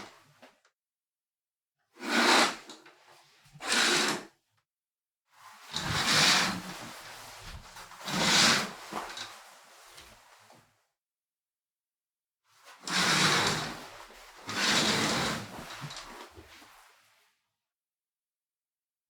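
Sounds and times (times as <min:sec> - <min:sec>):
curtain swishing along rail: 0:12.9 - 0:17.0.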